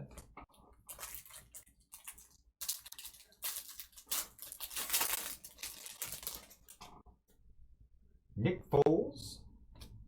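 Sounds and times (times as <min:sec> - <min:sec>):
trading cards rustling: 0:00.9 - 0:06.8.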